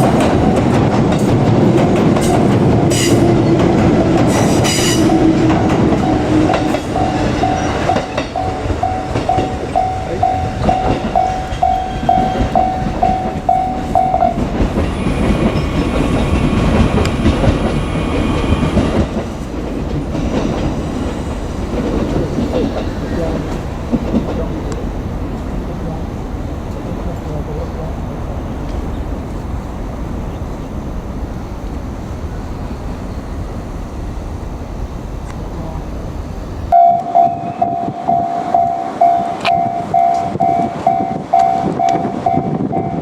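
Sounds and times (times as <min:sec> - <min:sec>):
train rumble and wheel clatter: 0:00.0 - 0:43.0
crossing warning bell ringing: 0:04.3 - 0:16.4, 0:36.7 - 0:43.0.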